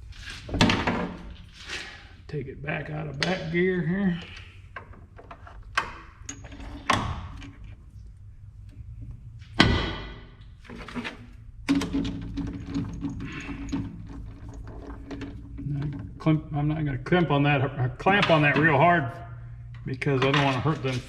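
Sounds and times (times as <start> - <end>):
metal knocks and clanks: 9.5 - 16.7, 17.6 - 19.1.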